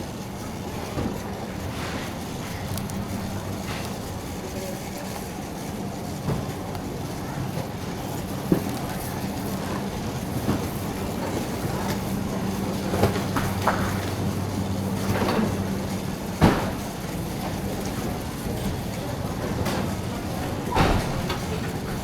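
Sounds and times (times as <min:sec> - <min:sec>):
steady hum: 0:00.0 - 0:06.7
shopping cart rolling and rattling: 0:00.0 - 0:22.0.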